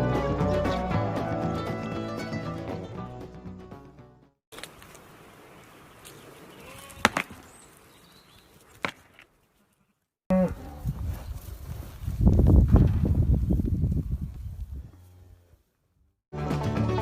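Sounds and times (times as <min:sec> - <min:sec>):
farm animal calling: 0:06.0 - 0:07.7.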